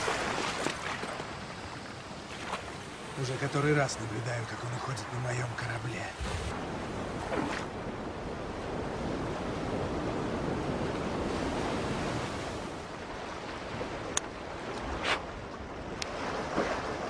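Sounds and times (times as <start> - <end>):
ocean surf washing ashore: 0.0 - 17.0
wind: 0.0 - 17.0.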